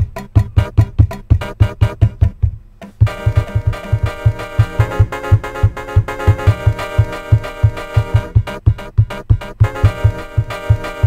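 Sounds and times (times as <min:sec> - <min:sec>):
kick drum beat: 0:00.0 - 0:11.0
sustained keyboard chords: 0:00.0 - 0:11.0.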